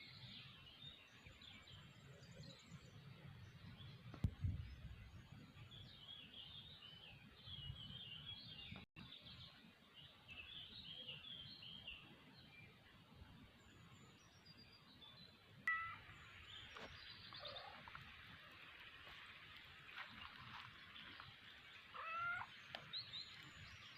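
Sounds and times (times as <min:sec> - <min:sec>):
small birds chirping: 0:13.5 - 0:23.9.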